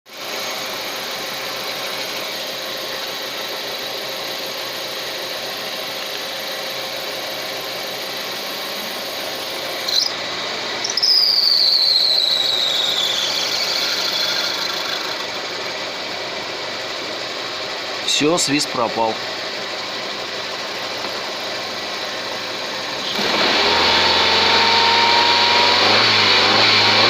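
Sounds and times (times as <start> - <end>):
car engine running: 0.2 - 11.1, 12.2 - 27.0
high-pitched whistle: 9.8 - 10.2, 10.8 - 15.2.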